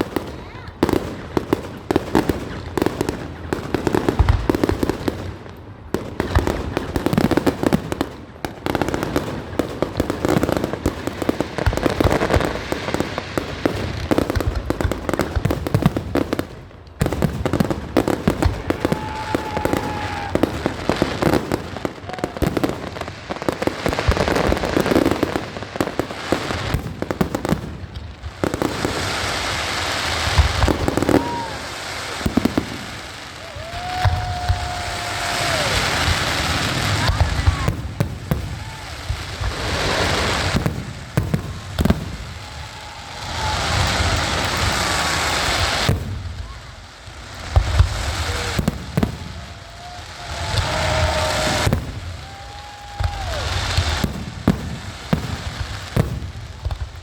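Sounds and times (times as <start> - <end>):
fireworks bursts and bangs: 0.0 - 57.0
fireworks crackling: 0.0 - 57.0
fireworks whistles: 17.5 - 56.9.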